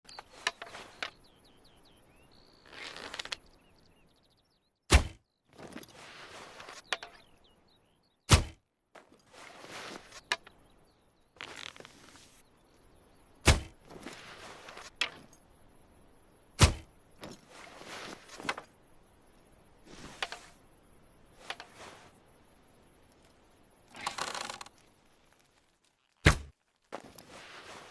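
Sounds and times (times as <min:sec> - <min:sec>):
rustling and scraping: 0:00.1 - 0:01.4, 0:02.6 - 0:03.5, 0:05.5 - 0:07.4, 0:09.0 - 0:10.6, 0:11.4 - 0:12.5, 0:13.5 - 0:15.4, 0:16.8 - 0:18.8, 0:19.8 - 0:20.7, 0:21.3 - 0:22.3, 0:23.1 - 0:27.9
small clicks: 0:02.6 - 0:03.7, 0:23.0 - 0:26.2.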